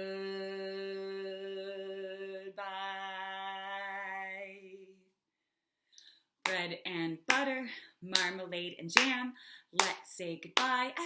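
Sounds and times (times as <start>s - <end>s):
woman singing long held notes: 0.0s - 5.0s.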